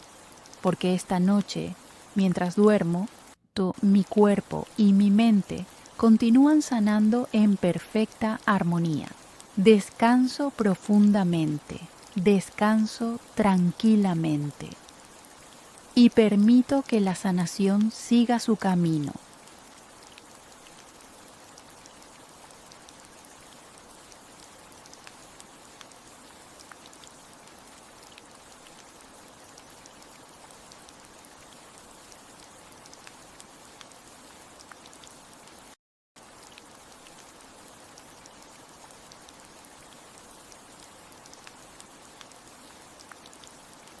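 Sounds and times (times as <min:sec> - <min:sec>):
steady rain: 0:00.0 - 0:44.0.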